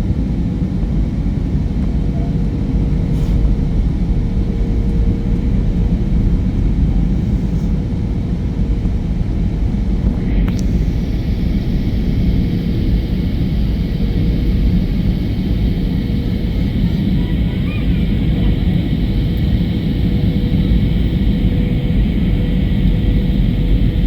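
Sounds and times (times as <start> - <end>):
airliner engine rumble: 0.0 - 24.0
high steady whine: 0.0 - 24.0
click: 10.4 - 10.7.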